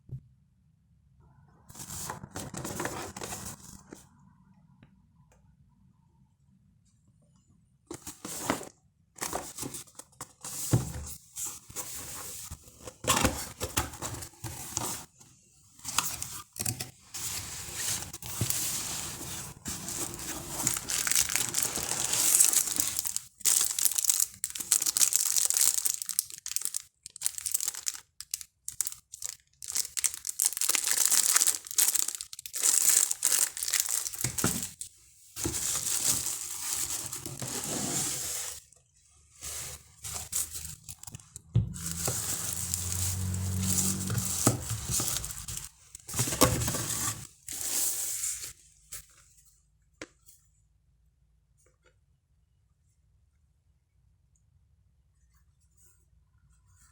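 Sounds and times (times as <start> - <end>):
packaging crinkling and tearing: 19.5 - 37.7, 39.4 - 47.8.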